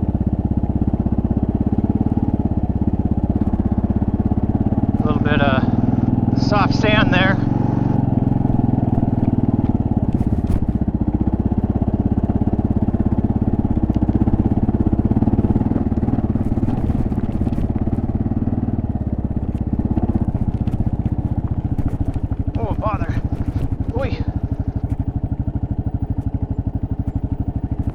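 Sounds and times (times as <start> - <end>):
motorcycle engine running: 0.0 - 27.9.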